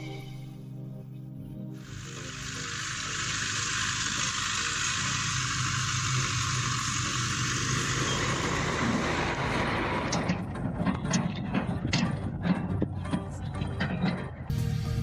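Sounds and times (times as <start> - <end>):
loud even hiss: 1.8 - 9.5
heavy vehicle engine running: 1.8 - 15.0.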